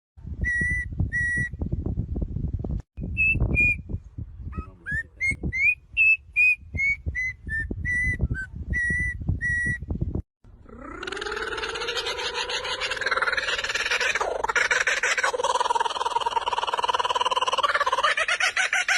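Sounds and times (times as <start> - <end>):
bird whistling: 0.4 - 1.6, 3.0 - 3.8, 4.6 - 9.8.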